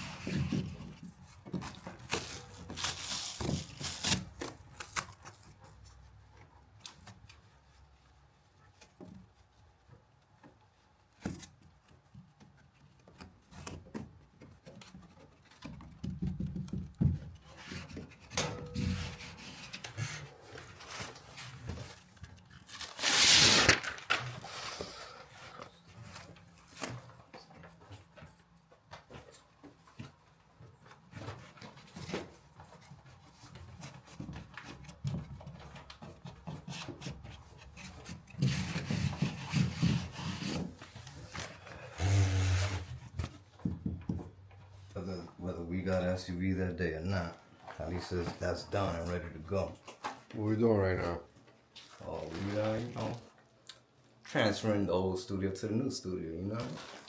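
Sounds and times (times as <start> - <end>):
rubbing and tearing handling noises: 0.0 - 16.0, 17.4 - 43.5, 47.4 - 53.5, 56.4 - 57.0.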